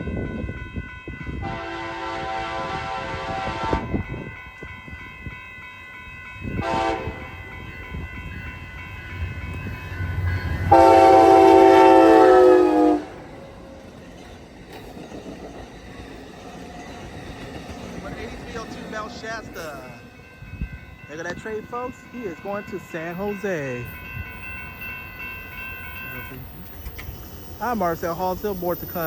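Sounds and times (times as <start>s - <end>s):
train rumbling: 0.0s - 29.0s
locomotive horn blasts: 1.3s - 4.2s, 6.6s - 7.4s, 10.7s - 13.3s.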